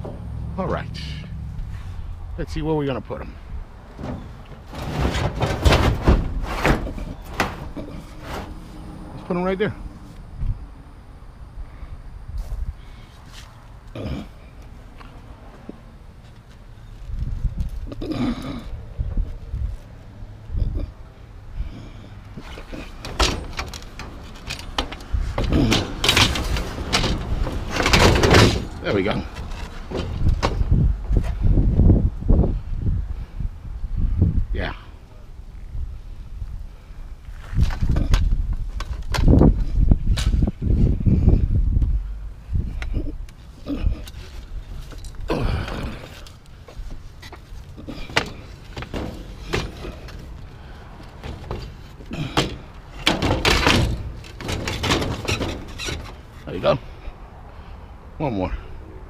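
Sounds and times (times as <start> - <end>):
aluminum chairs clattering: 3.9 - 8.7, 22.4 - 31.4, 43.7 - 56.5
scrap metal knocks and clanks: 3.9 - 8.7, 22.4 - 31.5, 47.2 - 57.0.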